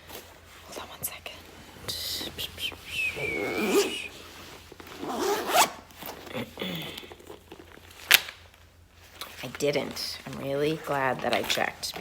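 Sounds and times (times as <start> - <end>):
rustling: 0.0 - 12.0
zipper being pulled: 3.1 - 4.2, 4.9 - 5.9.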